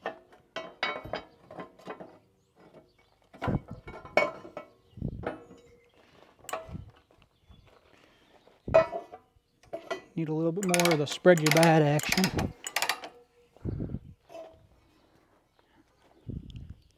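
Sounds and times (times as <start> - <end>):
metal clanks on steel: 10.6 - 13.1.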